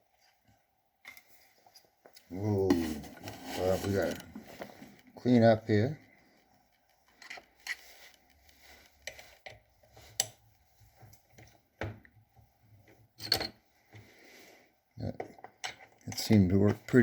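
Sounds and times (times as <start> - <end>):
metal tools clinking and knocking: 13.2 - 13.6.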